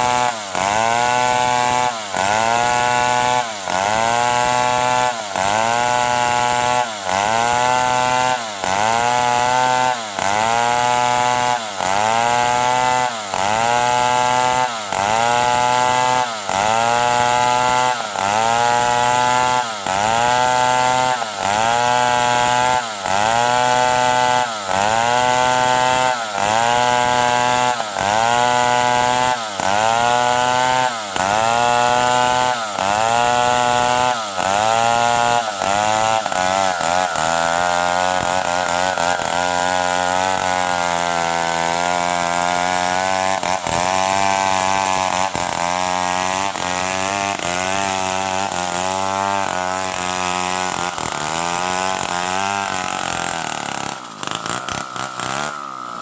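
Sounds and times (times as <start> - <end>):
chainsaw running at high revs: 0.0 - 56.0.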